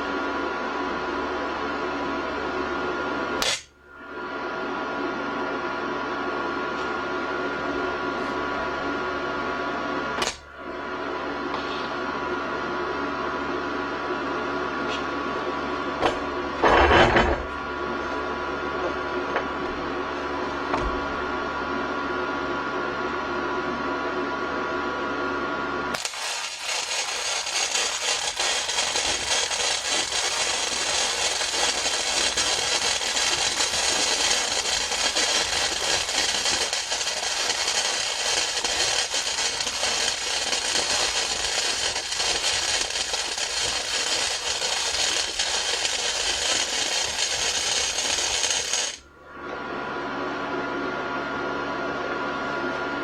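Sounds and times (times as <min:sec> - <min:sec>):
electrical hum: 0:00.0 - 0:53.0
welding arc crackling: 0:03.4 - 0:03.7, 0:10.2 - 0:10.4, 0:26.0 - 0:49.1.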